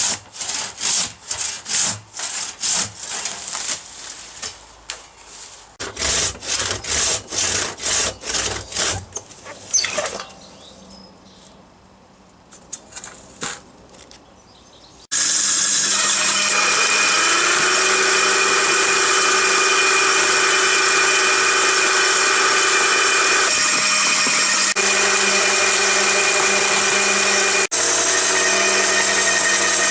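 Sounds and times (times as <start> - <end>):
hand saw cutting wood: 0.0 - 3.8, 5.8 - 10.2, 15.1 - 29.9
chainsaw running: 15.1 - 29.9.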